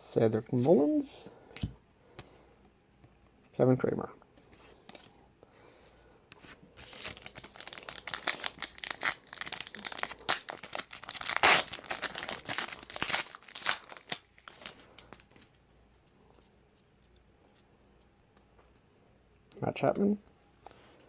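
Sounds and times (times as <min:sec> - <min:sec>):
wrapper tearing and crinkling: 0:06.8 - 0:15.5.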